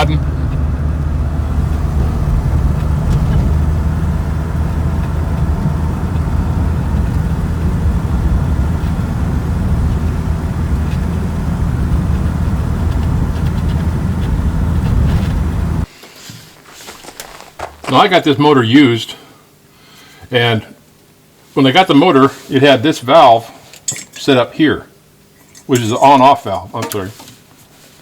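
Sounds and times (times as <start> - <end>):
car engine drone: 0.0 - 15.9
road noise: 0.0 - 15.9.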